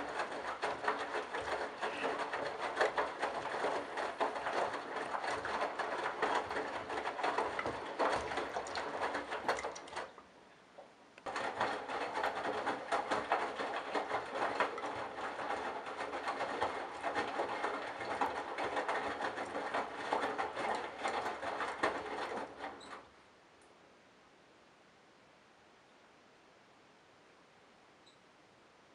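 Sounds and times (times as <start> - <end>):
washing machine running: 0.0 - 10.2, 11.2 - 23.1.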